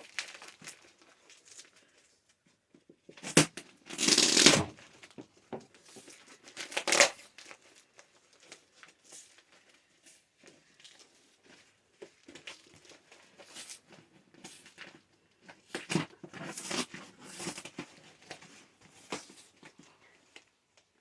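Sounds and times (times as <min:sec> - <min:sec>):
packing tape snapping: 0:03.2 - 0:04.8, 0:06.6 - 0:07.6
cardboard and tape ripping: 0:03.2 - 0:04.9, 0:06.5 - 0:07.7, 0:15.7 - 0:18.4.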